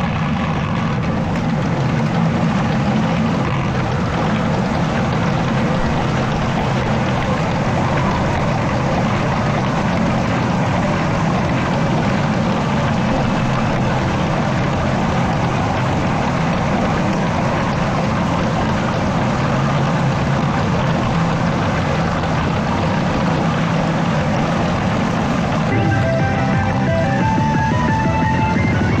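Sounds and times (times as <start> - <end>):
pachinko machines running: 0.0 - 29.0.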